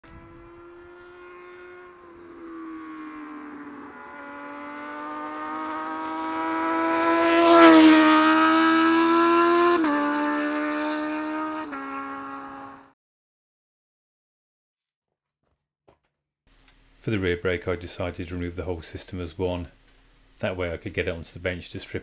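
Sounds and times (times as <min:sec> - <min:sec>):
motorcycle accelerating past: 0:00.0 - 0:13.0.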